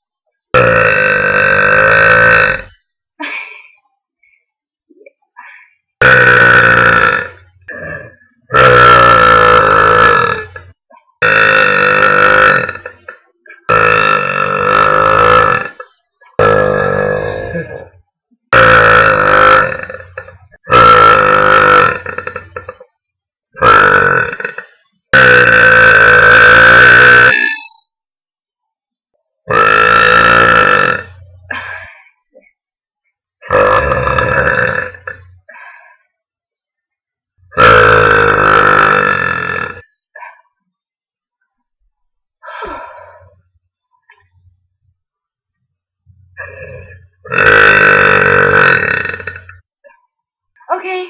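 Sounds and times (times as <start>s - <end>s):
girl burping loudly: 0.5s - 3.4s, 6.0s - 22.9s, 23.5s - 27.9s, 29.4s - 32.6s, 33.4s - 35.5s, 37.5s - 40.4s, 46.3s - 49.7s.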